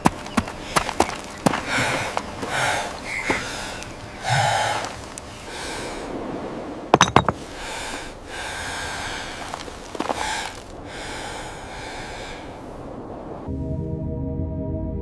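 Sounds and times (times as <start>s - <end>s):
heavy breathing with snorts: 0.5s - 6.1s, 7.4s - 12.6s.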